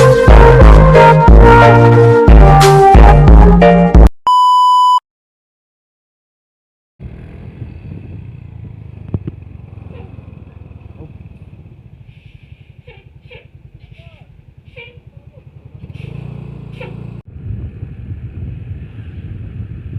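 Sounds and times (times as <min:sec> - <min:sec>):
music: 0:00.0 - 0:04.1
short electronic beep: 0:04.3 - 0:05.0
traffic engine rumble: 0:07.0 - 0:19.9.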